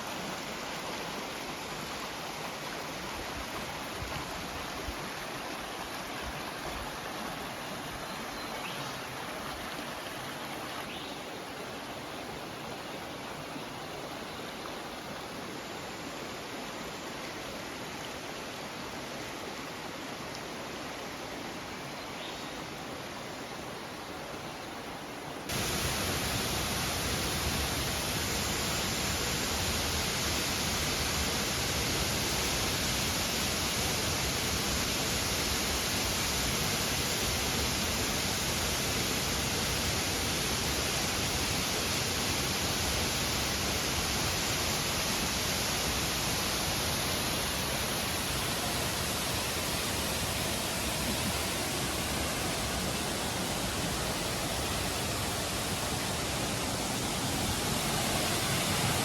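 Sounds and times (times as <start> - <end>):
waterfall rushing: 25.5 - 59.0.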